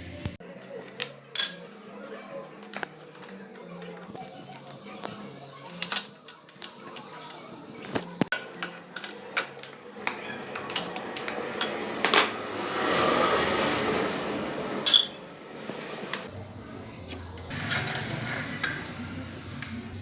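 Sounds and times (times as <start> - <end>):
hand tools clinking on metal: 11.6 - 12.6, 14.9 - 15.2.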